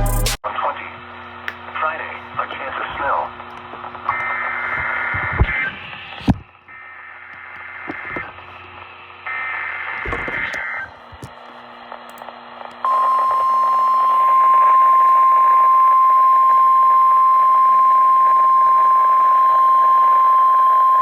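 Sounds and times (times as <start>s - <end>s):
radio static: 0.0s - 12.0s
steady high alarm tone: 12.8s - 21.0s.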